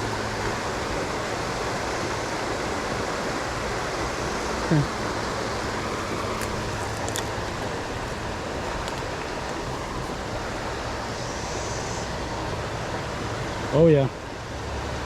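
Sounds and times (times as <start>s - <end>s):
creek water flowing: 0.0s - 15.0s.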